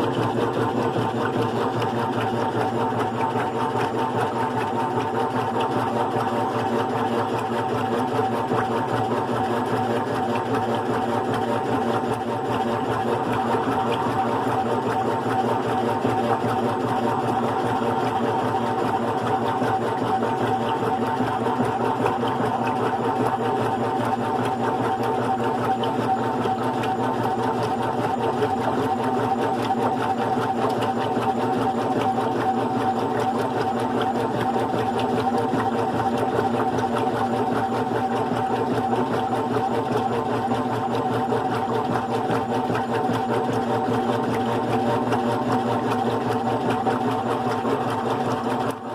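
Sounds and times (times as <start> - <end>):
washing machine humming: 0.0 - 48.9.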